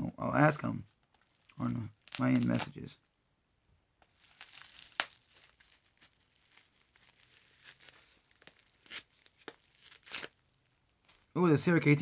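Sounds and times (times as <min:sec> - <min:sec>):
packaging rustling and crinkling: 0:00.9 - 0:02.9, 0:04.0 - 0:11.4.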